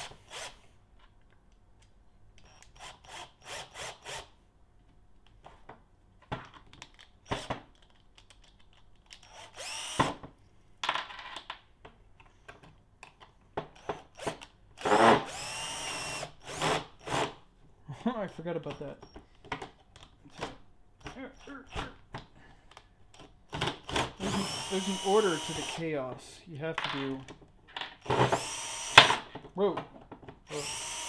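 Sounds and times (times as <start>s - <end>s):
electric driver motor whining: 0.0s - 0.6s, 9.3s - 10.2s, 14.8s - 16.7s, 23.9s - 25.8s, 28.1s - 29.3s, 30.5s - 31.0s.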